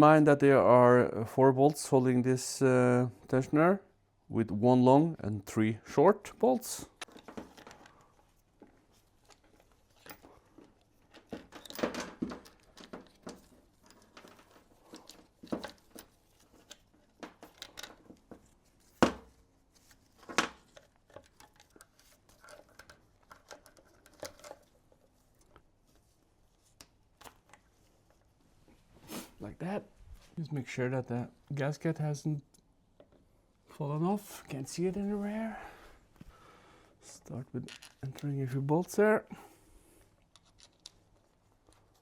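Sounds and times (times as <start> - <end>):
metal parts clinking and rattling: 9.0 - 18.2, 20.3 - 25.0, 37.6 - 38.2, 40.4 - 41.0.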